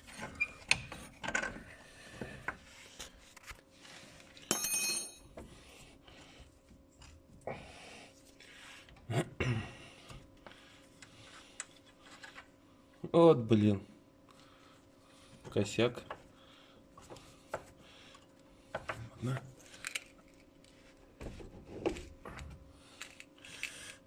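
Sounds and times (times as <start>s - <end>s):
metal clinks and knocks: 4.5s - 5.3s.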